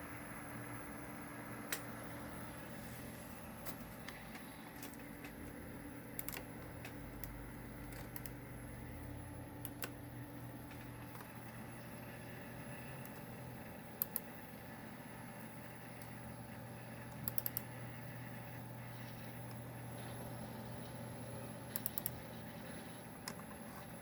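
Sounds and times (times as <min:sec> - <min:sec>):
computer hum: 0:00.0 - 0:24.0
hard drive seek ticks: 0:04.0 - 0:14.6, 0:15.4 - 0:23.5.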